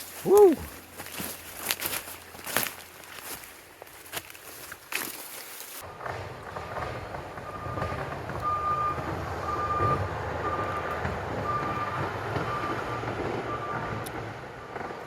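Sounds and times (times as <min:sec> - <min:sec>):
reversing alarm beeping: 0:07.4 - 0:14.0.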